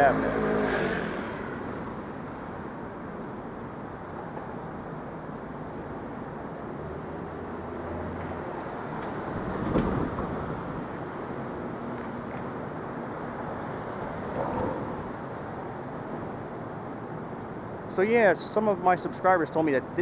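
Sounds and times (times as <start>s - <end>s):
vehicle passing: 0.0s - 2.8s, 6.8s - 15.5s
city street traffic: 0.0s - 20.0s.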